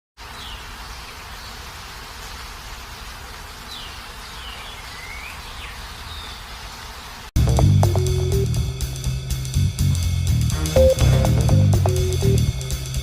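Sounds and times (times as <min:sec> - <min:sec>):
high buzzing hiss: 0:07.3 - 0:13.0.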